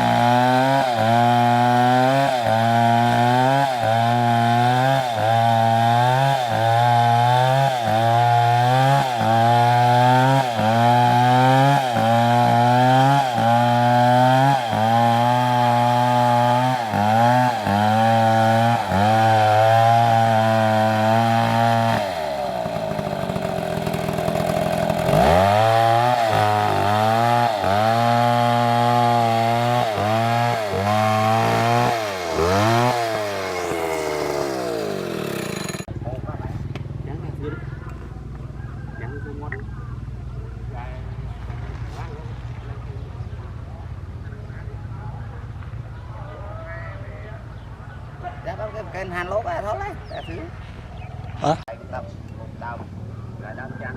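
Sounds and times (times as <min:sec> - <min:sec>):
chainsaw cutting wood: 0:00.0 - 0:35.9.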